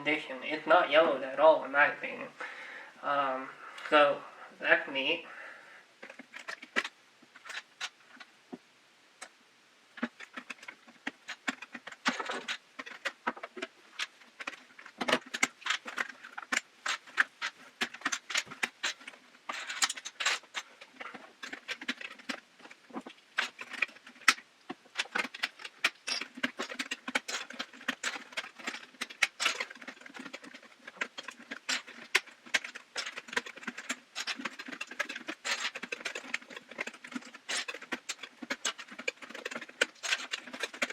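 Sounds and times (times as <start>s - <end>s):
plastic keycaps clicking: 10.0s - 22.8s, 23.4s - 40.9s.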